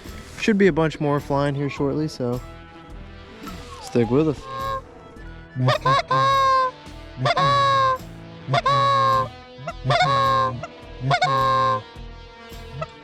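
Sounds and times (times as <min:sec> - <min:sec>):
goose honking: 0:03.6 - 0:04.8, 0:05.6 - 0:11.8.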